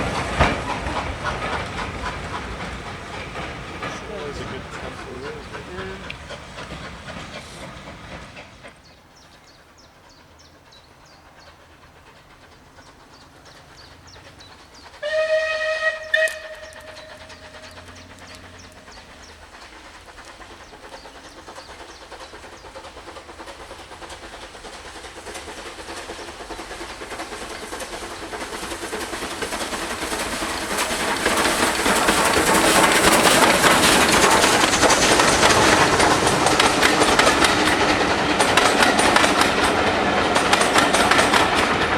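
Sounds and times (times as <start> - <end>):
train wheels rumbling on rails: 0.0 - 41.9
steam locomotive whistle: 15.0 - 18.6.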